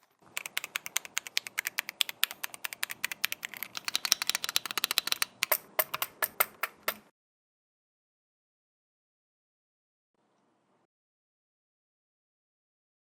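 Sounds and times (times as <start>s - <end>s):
mechanical keyboard typing: 0.0s - 7.1s.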